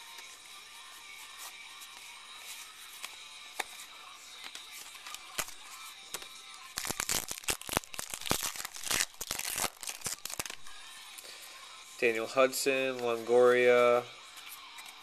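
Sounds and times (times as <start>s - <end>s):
card pack wrapper crackling: 4.4s - 10.7s.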